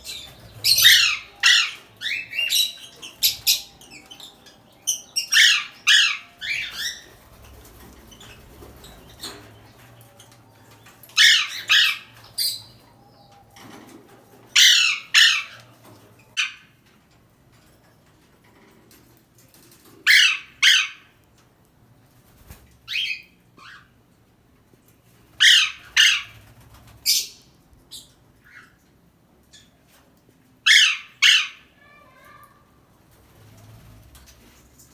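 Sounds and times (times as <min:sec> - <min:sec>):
parrot squawking: 0:00.0 - 0:07.2, 0:11.0 - 0:12.8, 0:14.6 - 0:15.7, 0:20.1 - 0:21.1, 0:25.4 - 0:26.4, 0:30.7 - 0:32.4.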